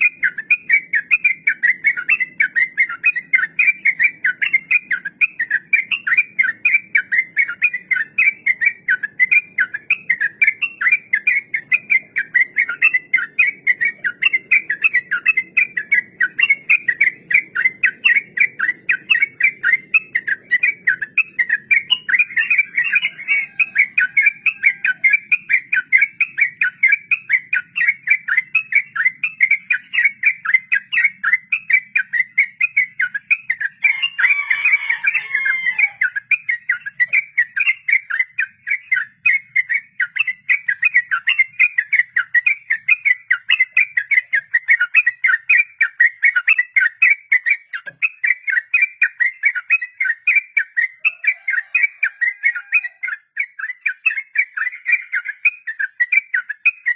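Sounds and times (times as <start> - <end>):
bird singing rapid chirps: 0.0 - 56.9.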